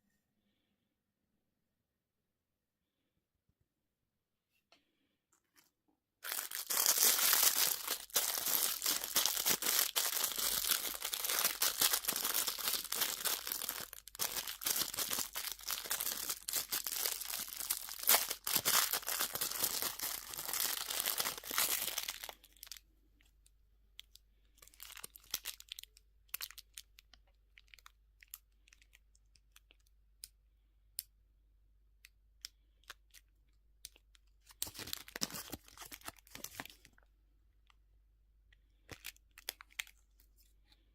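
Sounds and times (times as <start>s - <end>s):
wrapper crinkling and tearing: 6.2s - 22.8s, 24.6s - 29.7s, 34.4s - 37.0s, 38.9s - 40.3s.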